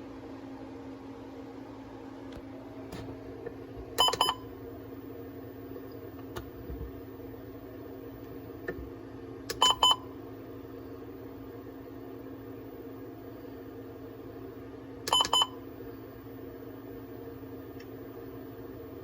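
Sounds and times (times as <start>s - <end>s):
steady hum: 0.0s - 19.0s
electronic button beeps: 4.0s - 4.5s, 9.5s - 10.0s, 15.1s - 15.6s.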